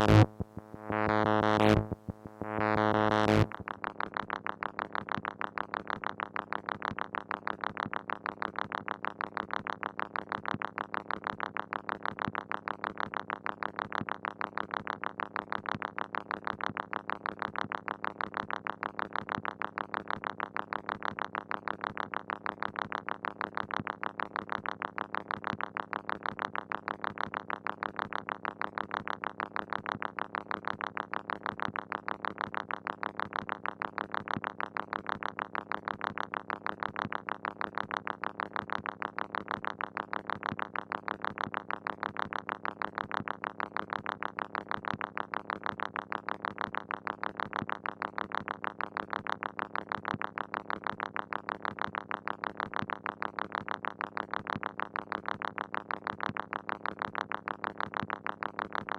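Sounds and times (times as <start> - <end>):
steady low synth tone: 0.0 - 3.6
synthesizer pulses: 0.0 - 3.6.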